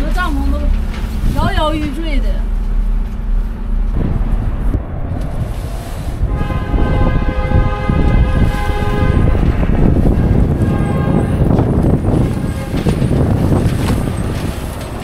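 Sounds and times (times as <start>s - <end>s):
strong wind buffeting: 0.0s - 15.0s.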